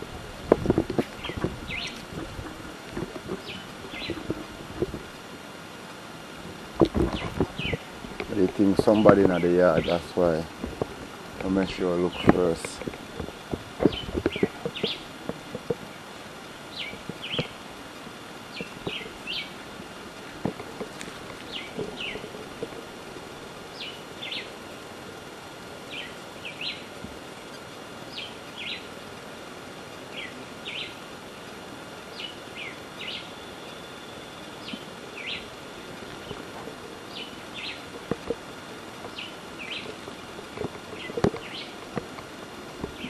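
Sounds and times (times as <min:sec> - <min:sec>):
high chirping calls: 0:01.1 - 0:02.1, 0:03.3 - 0:04.4, 0:07.0 - 0:10.5, 0:11.4 - 0:15.2, 0:18.5 - 0:19.6, 0:21.4 - 0:22.4, 0:23.7 - 0:24.5, 0:32.1 - 0:37.9, 0:39.1 - 0:40.1, 0:40.8 - 0:41.8.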